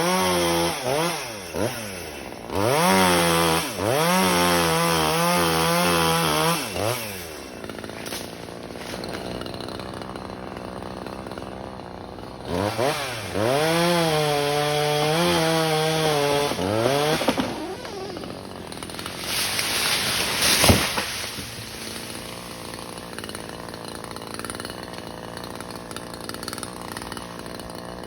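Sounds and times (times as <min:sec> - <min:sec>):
chainsaw revving and idling: 0:00.0 - 0:28.0
sharp crack: 0:17.0 - 0:18.2, 0:18.9 - 0:22.6.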